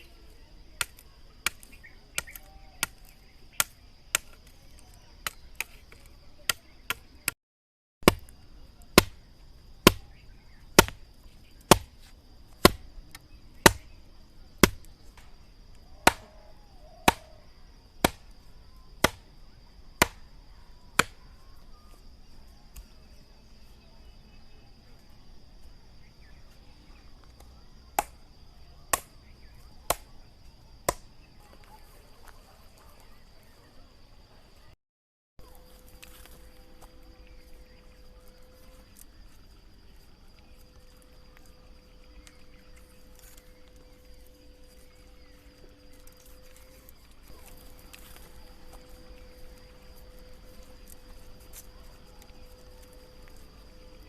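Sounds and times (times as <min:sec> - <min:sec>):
blade chopping wood: 0:08.0 - 0:08.3, 0:08.9 - 0:09.2, 0:09.8 - 0:10.2, 0:10.8 - 0:11.0, 0:11.6 - 0:14.0, 0:14.6 - 0:15.3, 0:16.0 - 0:16.3, 0:17.0 - 0:17.3, 0:18.0 - 0:18.3, 0:19.0 - 0:19.2, 0:20.0 - 0:20.2, 0:21.0 - 0:21.2, 0:30.9 - 0:31.1
steady high-pitched whine: 0:35.4 - 0:54.0.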